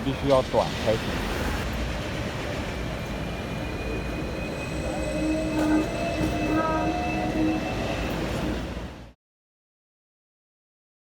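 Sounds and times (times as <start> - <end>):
tram rumbling on rails: 0.0 - 9.2
steel wheels squealing: 2.6 - 9.0.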